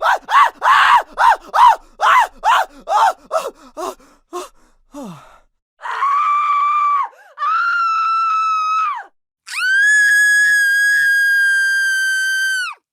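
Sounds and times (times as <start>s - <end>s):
person screaming in fear: 0.0s - 12.8s
person gasping: 1.0s - 5.6s.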